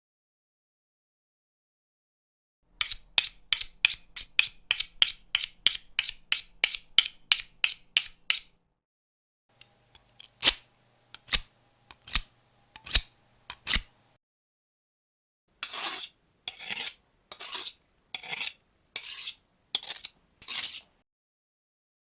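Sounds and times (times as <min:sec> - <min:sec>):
knife sharpening scrapes: 0:02.8 - 0:08.5, 0:09.6 - 0:14.0, 0:15.6 - 0:21.0.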